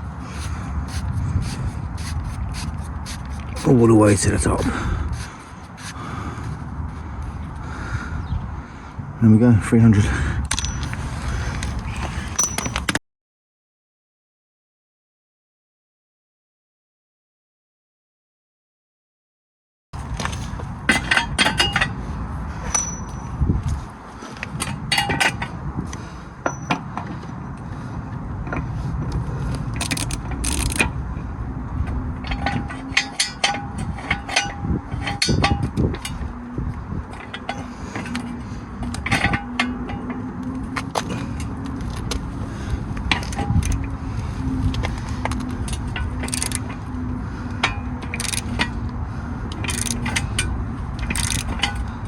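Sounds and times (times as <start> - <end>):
metal tools clinking and knocking: 10.5 - 11.0, 12.3 - 13.0, 20.9 - 22.0, 22.6 - 23.3, 26.4 - 26.8, 32.2 - 36.2, 45.4 - 46.7, 47.6 - 48.8, 49.5 - 51.9.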